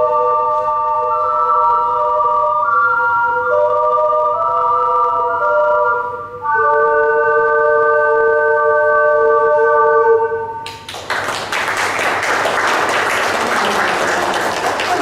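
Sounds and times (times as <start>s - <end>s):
audience applauding: 10.7s - 15.0s.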